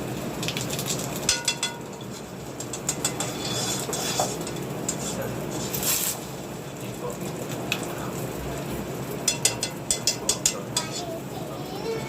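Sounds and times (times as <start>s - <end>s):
kitchen utensils clinking: 0.7s - 6.2s, 9.2s - 11.2s.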